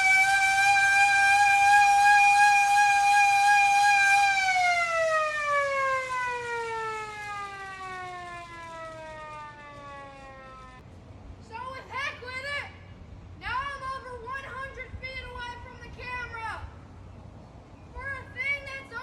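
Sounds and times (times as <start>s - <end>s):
hand-crank siren wailing: 0.0s - 10.8s.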